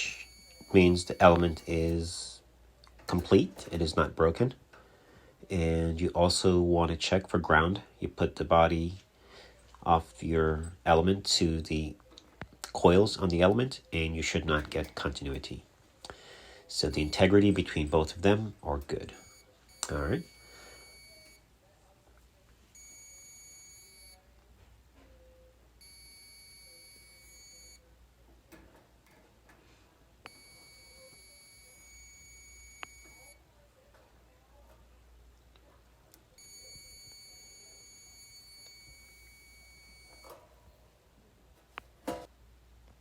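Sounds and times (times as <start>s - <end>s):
multimeter continuity beep: 0.0s - 2.2s, 16.8s - 18.0s, 19.1s - 21.5s, 22.7s - 24.2s, 25.8s - 27.8s, 30.2s - 33.4s, 36.3s - 40.4s.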